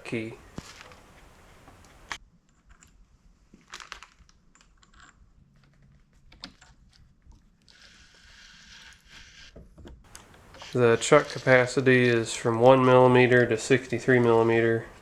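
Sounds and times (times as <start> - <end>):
soft rustle: 0.0 - 6.3, 10.1 - 15.0.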